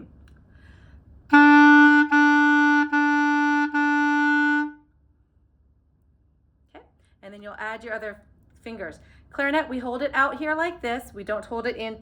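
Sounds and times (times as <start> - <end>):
clarinet tongued notes: 1.3 - 4.8.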